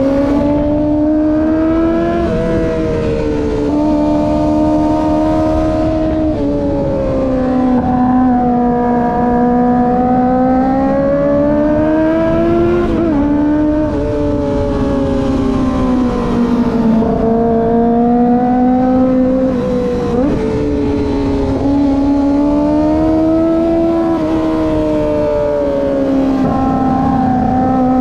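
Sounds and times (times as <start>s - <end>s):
motorcycle engine at high revs: 0.0s - 28.0s
wind rush: 10.6s - 28.0s.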